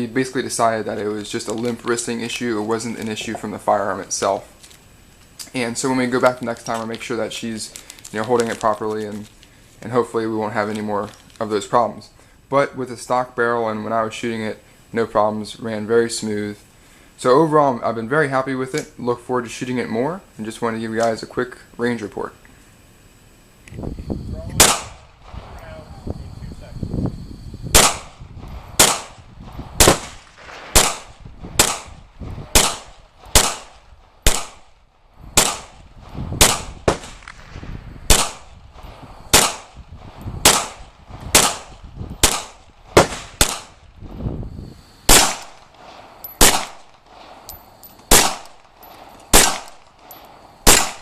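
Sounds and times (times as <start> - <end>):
pistol shots with echo: 24.6 - 25.2, 27.7 - 28.2, 28.8 - 29.2, 29.8 - 34.8, 35.4 - 35.8, 36.4 - 38.5, 39.3 - 39.8, 40.4 - 43.8, 45.1 - 45.8, 46.4 - 47.2, 48.1 - 51.0.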